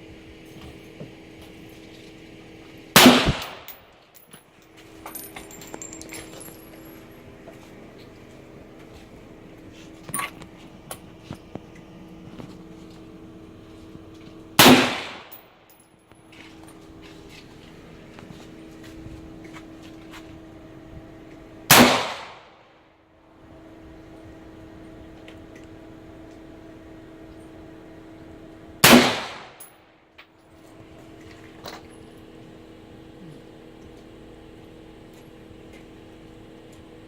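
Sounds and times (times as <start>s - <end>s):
rifle shots with echo: 3.0s - 3.8s, 14.6s - 15.4s, 21.7s - 22.5s, 28.8s - 29.6s.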